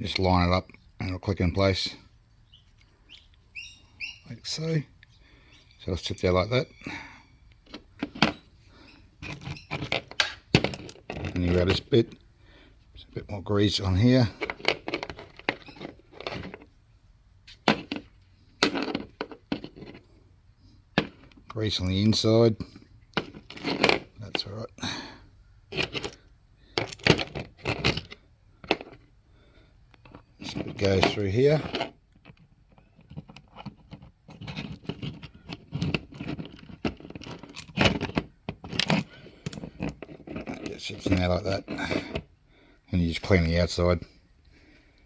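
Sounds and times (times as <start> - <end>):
hands handling steering parts: 7.4 - 24.6, 25.7 - 29.2, 29.8 - 42.4.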